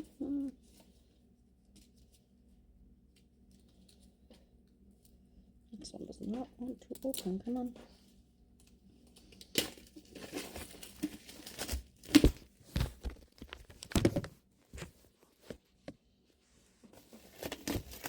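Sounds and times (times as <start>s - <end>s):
packaging tearing and rustling: 9.5s - 14.2s, 17.0s - 18.0s.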